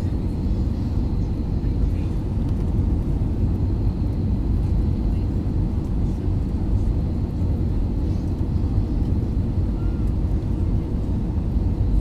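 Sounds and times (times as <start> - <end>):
airliner cabin engine rumble: 0.0 - 12.0.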